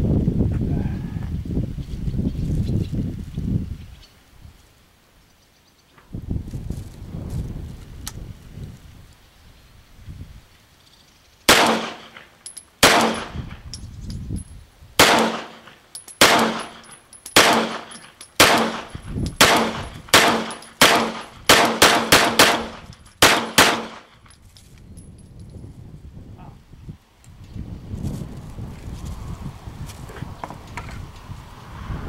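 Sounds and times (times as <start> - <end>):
pistol shots: 11.5 - 13.6, 15.0 - 24.1.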